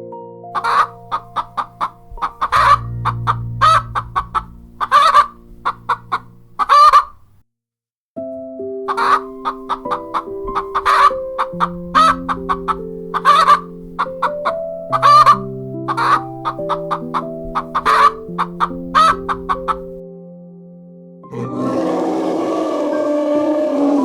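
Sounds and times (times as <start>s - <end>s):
music with slow held chords: 0.0s - 6.9s, 8.2s - 21.8s
chicken clucking: 0.6s - 7.2s, 8.9s - 19.9s
chicken squawks: 0.6s - 7.3s, 8.9s - 19.8s, 21.4s - 24.0s.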